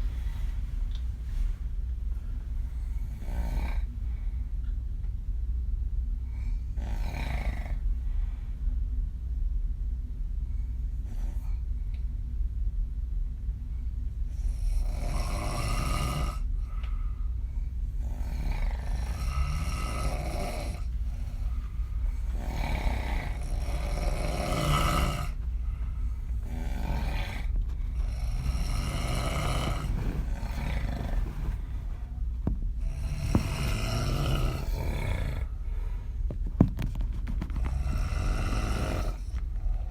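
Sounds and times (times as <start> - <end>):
woman snoring heavily: 2.9 - 3.9, 6.7 - 7.8, 14.5 - 16.5, 18.0 - 21.6, 22.2 - 25.4, 26.4 - 31.9, 32.8 - 35.8, 37.5 - 39.9.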